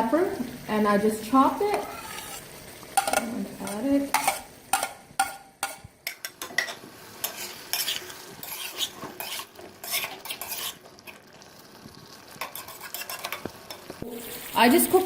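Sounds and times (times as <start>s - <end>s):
meat sizzling in oil: 0.0s - 15.0s
spoon scraping pan: 1.6s - 11.2s, 12.4s - 14.2s.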